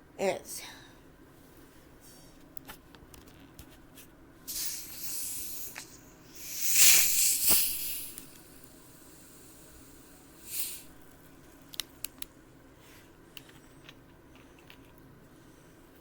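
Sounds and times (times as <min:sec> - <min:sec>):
carbonation hissing: 0:04.5 - 0:11.0.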